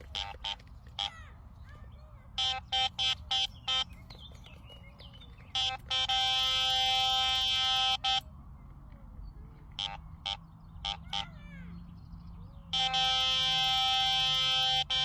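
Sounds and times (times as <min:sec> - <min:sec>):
electronic bite alarm bleeps: 0:02.4 - 0:03.9, 0:05.5 - 0:08.2, 0:12.7 - 0:15.0.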